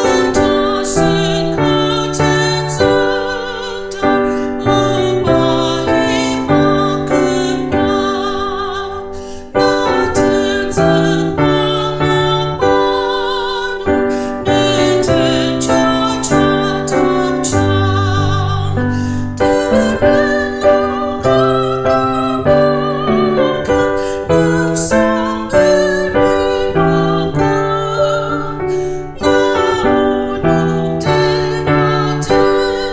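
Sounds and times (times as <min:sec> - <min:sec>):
piano chords and melody: 0:00.0 - 0:32.9.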